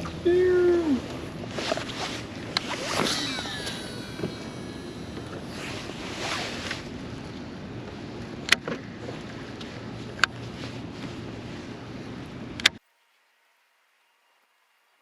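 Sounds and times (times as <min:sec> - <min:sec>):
wind on a boat: 0:00.0 - 0:12.6
short falling whines: 0:01.8 - 0:07.5.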